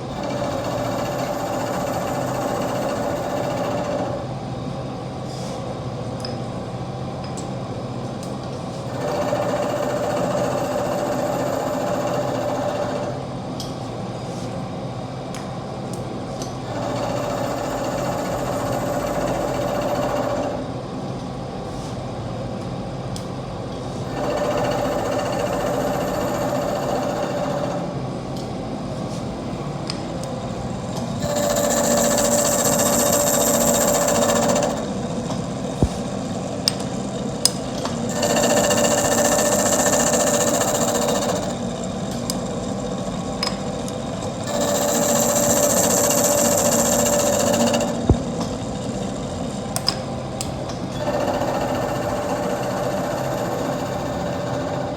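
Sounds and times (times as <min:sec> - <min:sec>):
milling machine cutting: 0:31.0 - 0:36.5, 0:37.4 - 0:43.2, 0:44.2 - 0:49.2, 0:51.0 - 0:54.9.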